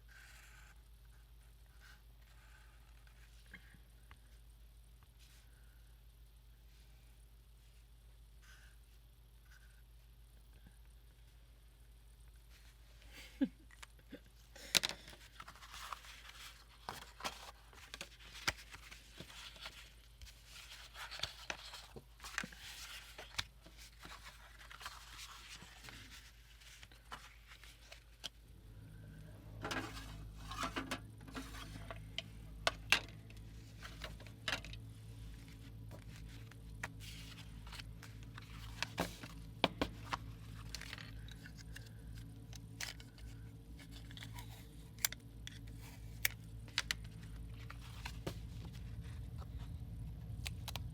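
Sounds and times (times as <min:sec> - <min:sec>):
steady low hum: 0:00.0 - 0:50.9
paper rustling and tearing: 0:15.2 - 0:28.1.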